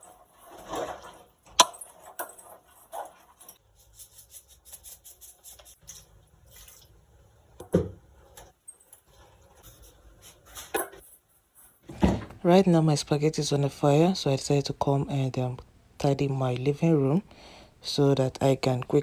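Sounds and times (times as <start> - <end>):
pots and utensils clattering: 0.0 - 3.6, 7.6 - 11.2.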